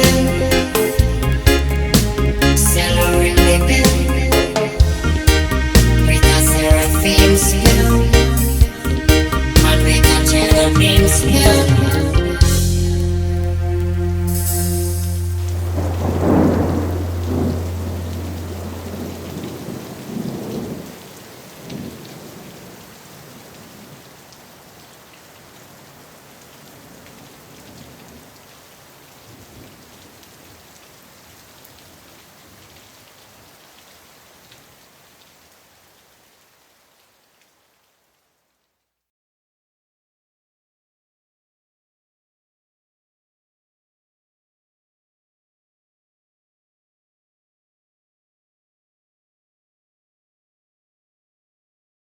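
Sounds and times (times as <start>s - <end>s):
steady rain: 0.0s - 39.0s
rolling thunder: 1.0s - 3.6s, 15.3s - 24.0s.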